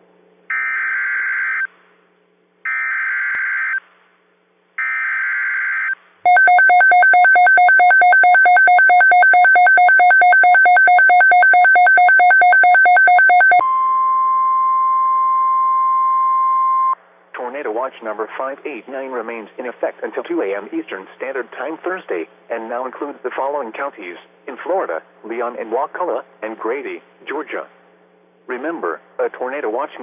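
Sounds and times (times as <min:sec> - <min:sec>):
two-tone attention signal: 0:06.3 - 0:17.0.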